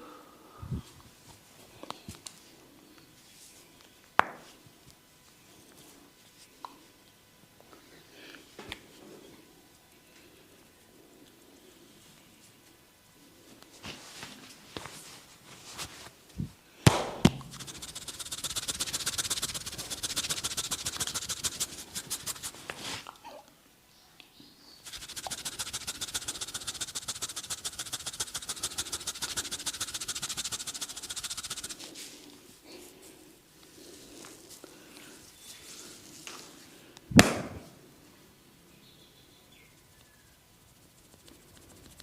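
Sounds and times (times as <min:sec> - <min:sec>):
hands rubbing head and hair: 0:13.4 - 0:16.2, 0:17.3 - 0:23.1, 0:24.9 - 0:34.6, 0:40.6 - 0:42.0
sharp cracks: 0:37.2 - 0:37.6.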